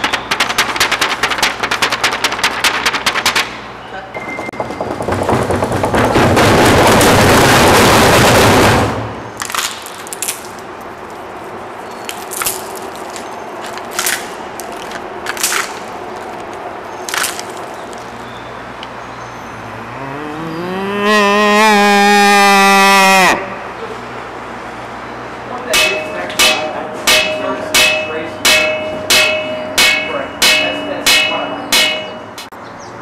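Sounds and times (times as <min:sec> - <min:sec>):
sharp knocks: 0:04.2 - 0:09.0, 0:25.7 - 0:32.3
loud rushing noise: 0:04.5 - 0:09.5
cow mooing: 0:19.7 - 0:23.6.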